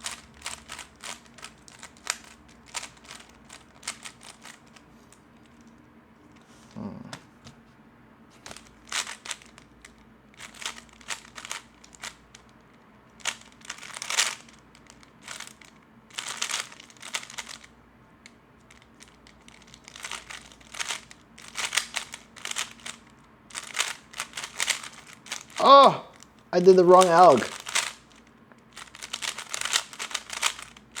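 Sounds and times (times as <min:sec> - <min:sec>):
puzzle cube clacking: 0:19.4 - 0:26.0, 0:26.6 - 0:28.0, 0:28.8 - 0:31.0.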